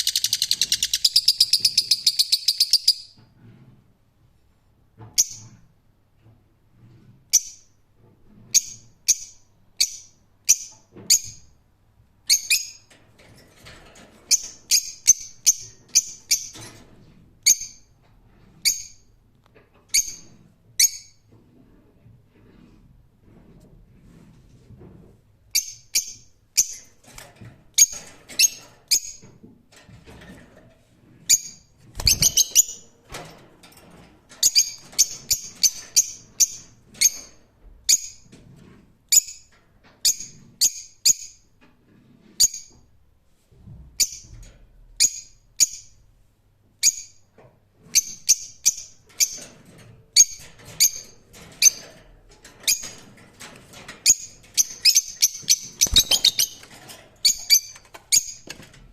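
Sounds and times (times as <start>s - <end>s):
lovebirds chirping: 32.0s - 32.8s, 54.6s - 56.6s.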